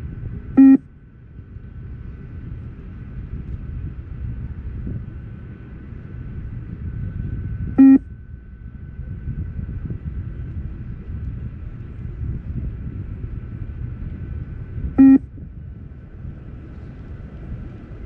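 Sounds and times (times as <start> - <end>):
low rumble: 0.0 - 18.0
short electronic beeps: 0.6 - 0.8, 7.8 - 8.0, 15.0 - 15.2.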